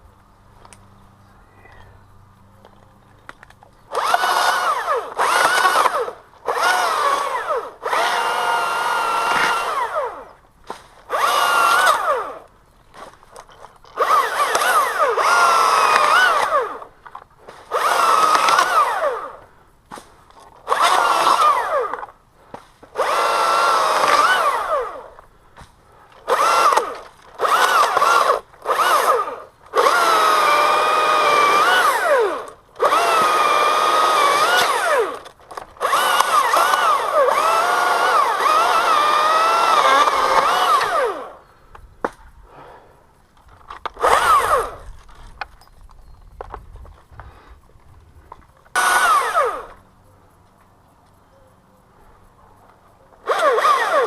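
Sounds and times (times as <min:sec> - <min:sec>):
chainsaw revving: 0:03.9 - 0:10.3, 0:11.0 - 0:12.5, 0:14.0 - 0:16.9, 0:17.5 - 0:19.5, 0:20.6 - 0:22.1, 0:22.9 - 0:25.2, 0:26.2 - 0:41.4, 0:43.8 - 0:44.8, 0:48.7 - 0:49.8, 0:53.2 - 0:54.0.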